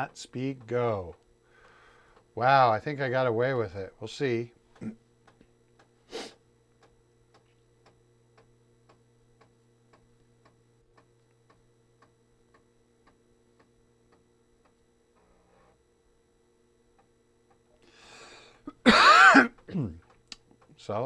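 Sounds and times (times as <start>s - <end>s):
disk drive spinning hum: 0.0s - 21.0s.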